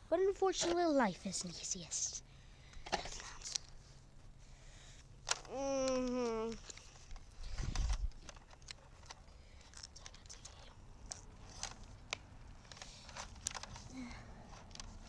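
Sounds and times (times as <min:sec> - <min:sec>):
plastic parts clicking and tapping: 0:05.2 - 0:13.9, 0:14.5 - 0:15.0.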